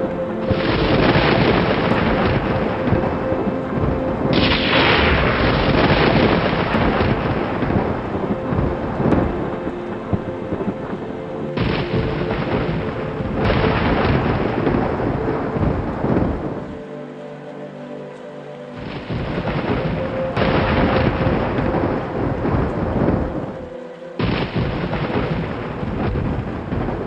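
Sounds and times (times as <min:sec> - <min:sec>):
sharp thunder claps: 0:00.0 - 0:07.8
rolling thunder: 0:00.0 - 0:09.5, 0:11.6 - 0:16.6, 0:24.2 - 0:27.0
steady rain: 0:00.0 - 0:27.0.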